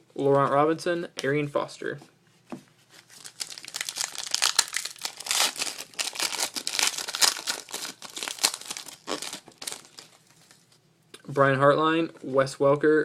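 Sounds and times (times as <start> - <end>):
foil wrapper tearing and crinkling: 3.0 - 10.6.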